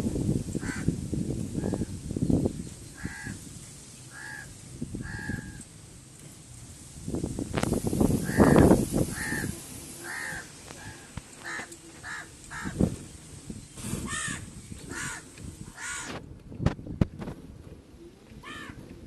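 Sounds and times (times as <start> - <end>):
bird harsh calls: 2.8 - 5.7, 8.2 - 13.0, 13.7 - 16.1.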